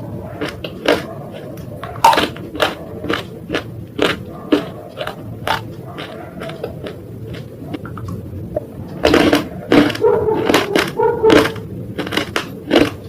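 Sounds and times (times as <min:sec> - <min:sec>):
brittle crunching: 0:02.0 - 0:07.5, 0:09.0 - 0:13.0.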